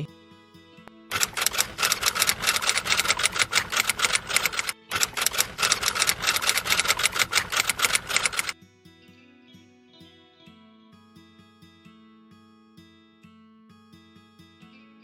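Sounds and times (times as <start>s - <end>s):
fast even clicks like typing: 1.1s - 8.6s.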